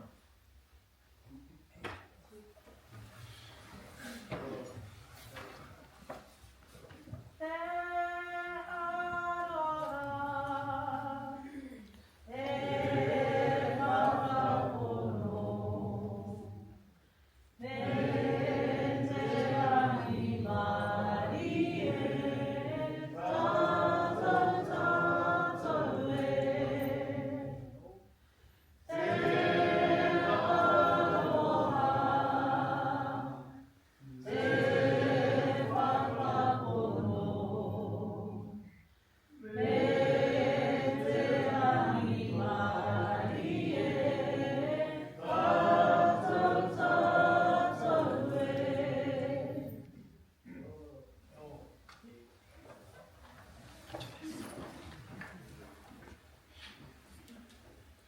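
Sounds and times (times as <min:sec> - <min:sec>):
group singing unaccompanied: 0:07.8 - 0:11.6, 0:12.3 - 0:16.9, 0:17.6 - 0:28.0, 0:28.9 - 0:38.8, 0:39.4 - 0:50.1.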